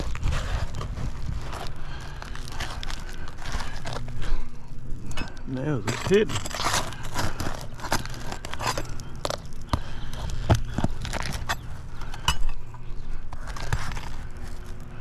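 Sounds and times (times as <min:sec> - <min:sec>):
tool scraping under shingle: 0:00.0 - 0:14.8
brittle shingle crackling: 0:00.0 - 0:15.0.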